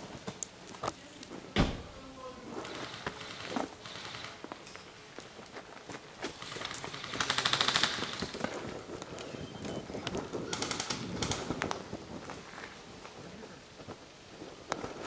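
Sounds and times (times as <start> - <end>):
airsoft gun full-auto bursts: 2.8 - 4.4, 6.4 - 8.4.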